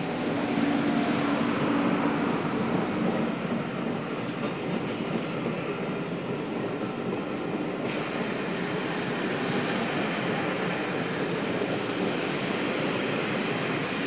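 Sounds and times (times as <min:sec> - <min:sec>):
train wheels on rails: 0:00.0 - 0:14.0.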